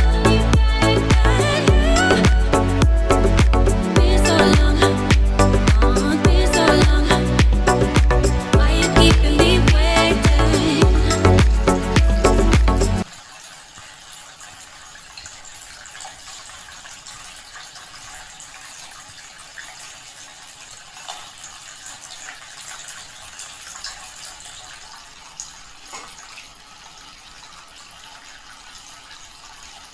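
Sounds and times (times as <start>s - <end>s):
sharp water drips: 0.0s - 29.9s
tabletop fountain water trickling: 13.0s - 29.9s.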